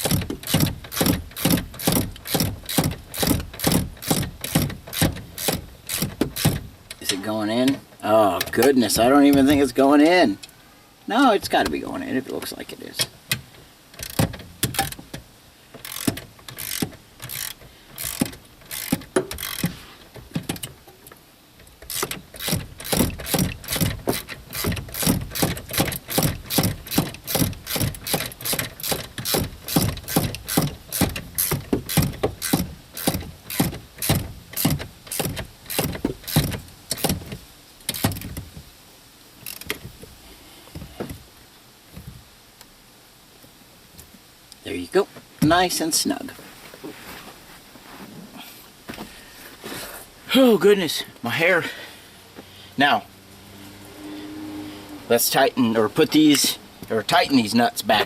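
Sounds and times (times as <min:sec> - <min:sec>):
hand ratchet clicking: 0:00.0 - 0:07.1, 0:14.0 - 0:15.2, 0:15.8 - 0:19.8, 0:21.6 - 0:37.3, 0:37.9 - 0:38.4, 0:39.4 - 0:39.8.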